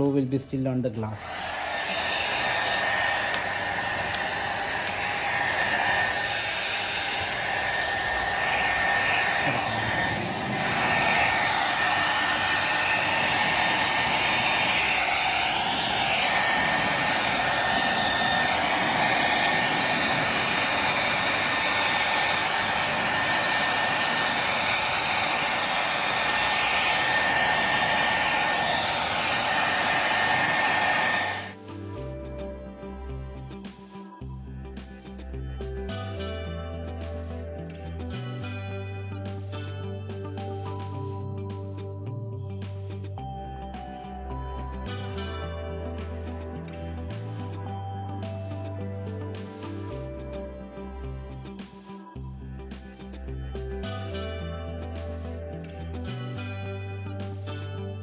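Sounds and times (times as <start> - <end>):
music: 0.0 - 58.0
hair dryer blowing with whine: 1.1 - 31.6, 43.2 - 50.6.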